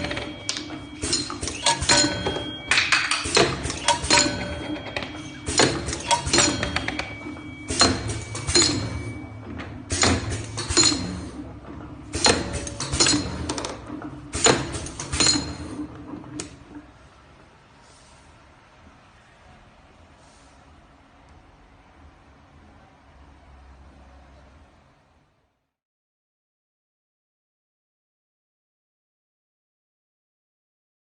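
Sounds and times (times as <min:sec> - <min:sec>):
low machine hum: 0:00.0 - 0:25.7.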